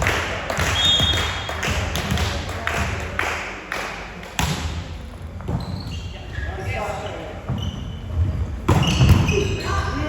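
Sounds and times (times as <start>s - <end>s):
volleyball strikes and thuds: 4.4s - 5.8s
shoe squeak: 5.4s - 10.0s.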